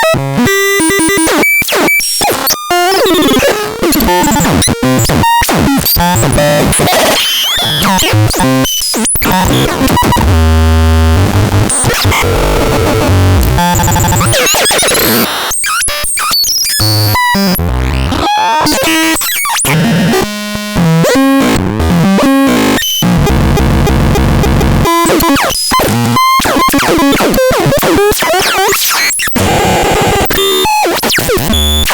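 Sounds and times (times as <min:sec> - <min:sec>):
harsh electronic buzzing noise: 0:09.1 - 0:15.8
deep low buzz: 0:23.1 - 0:24.8.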